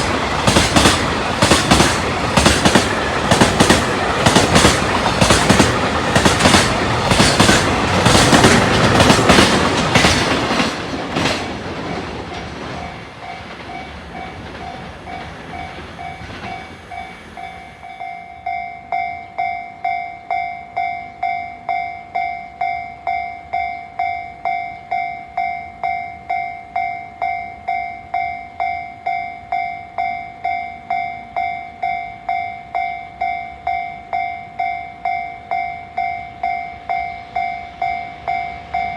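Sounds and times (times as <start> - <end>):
train wagons clattering over rails: 0.0 - 17.8
level crossing warning bell: 12.3 - 38.9.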